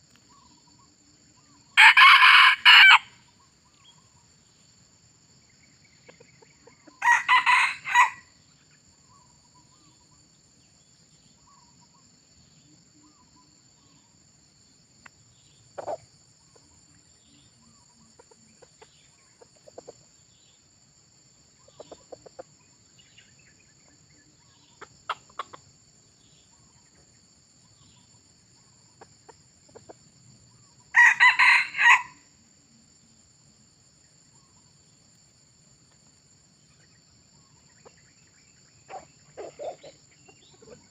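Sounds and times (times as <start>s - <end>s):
rooster crowing: 1.8s - 3.2s, 7.0s - 8.3s, 30.9s - 32.3s.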